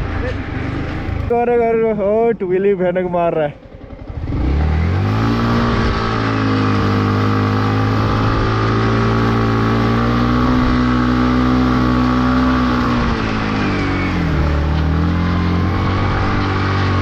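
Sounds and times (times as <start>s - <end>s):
motorcycle engine at high revs: 3.6s - 17.0s
rear tyre spinning: 3.6s - 17.0s.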